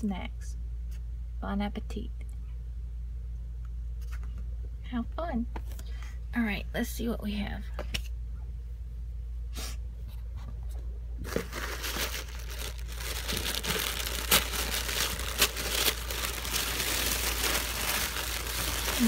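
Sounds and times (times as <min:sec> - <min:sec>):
packaging rustling and tearing: 0:11.2 - 0:19.0.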